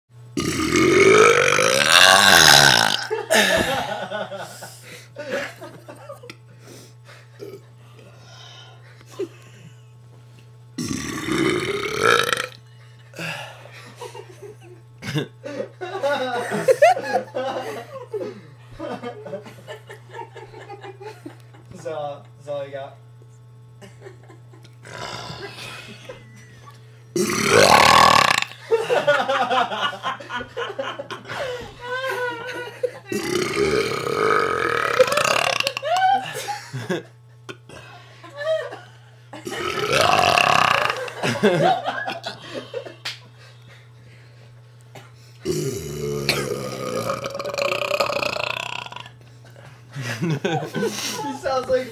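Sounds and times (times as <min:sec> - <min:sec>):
boy burping: 0:00.4 - 0:03.7, 0:10.8 - 0:12.6, 0:24.8 - 0:25.6, 0:27.2 - 0:28.6, 0:33.1 - 0:35.9, 0:39.5 - 0:41.2, 0:45.4 - 0:49.1.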